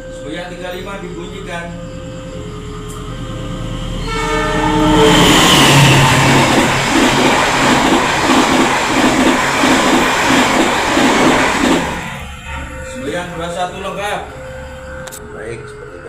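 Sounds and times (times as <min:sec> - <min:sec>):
train rushing roar: 0:00.0 - 0:16.0
train horn blast: 0:04.0 - 0:08.2
train wheels clacking: 0:04.6 - 0:14.3.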